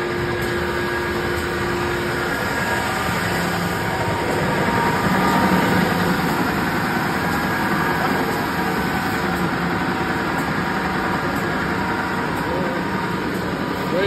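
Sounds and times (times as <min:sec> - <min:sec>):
belt sander running: 0:00.0 - 0:14.0.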